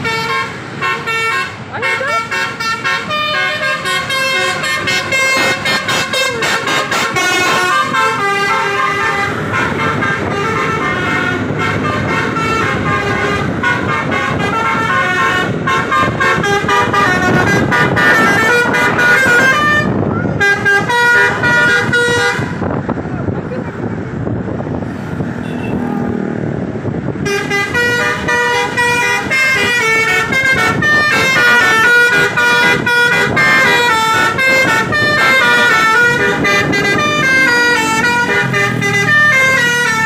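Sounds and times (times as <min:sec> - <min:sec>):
multi-tone air horn melody: 0:00.0 - 0:22.7, 0:27.2 - 0:40.0
vehicle and road noise: 0:00.0 - 0:40.0.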